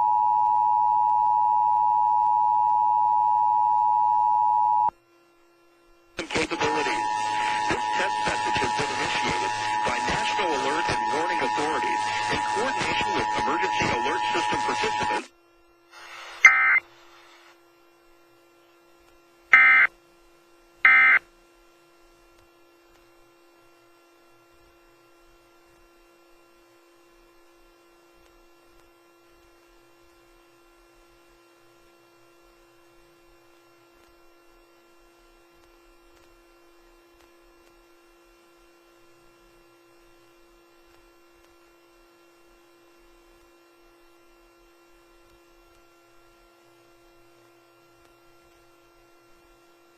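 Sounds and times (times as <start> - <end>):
buzzing data bursts: 6.2 - 15.3.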